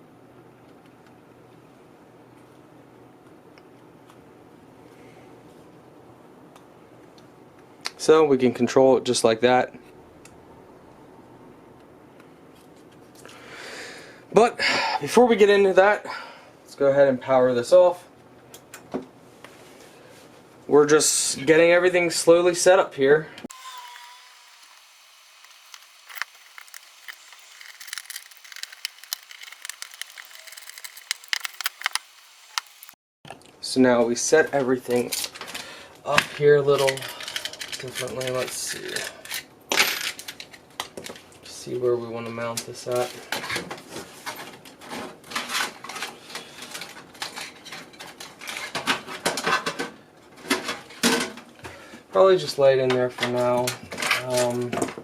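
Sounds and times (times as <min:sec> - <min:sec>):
computer parts clicking and rattling: 0:23.6 - 0:33.0.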